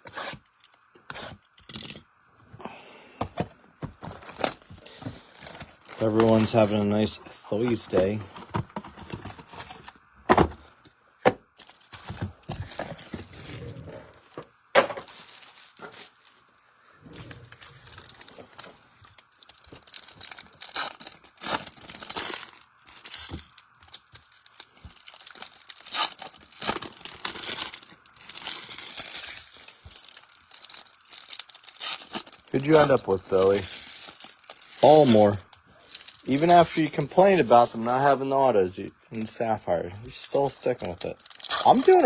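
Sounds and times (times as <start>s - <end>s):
card wrappers tearing and crinkling: 3.9s - 16.5s, 17.2s - 42.0s.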